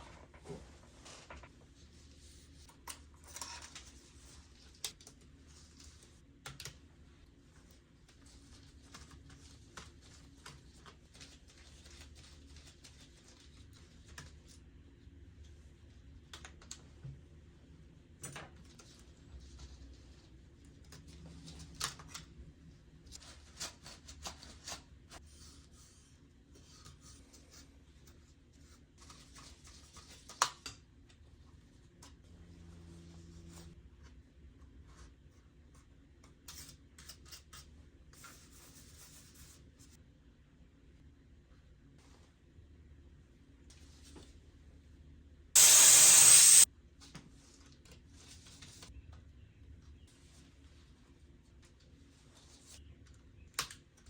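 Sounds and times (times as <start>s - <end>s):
faint handling rustles and clicks: 0.0s - 6.8s
compressed air hiss: 45.6s - 46.6s.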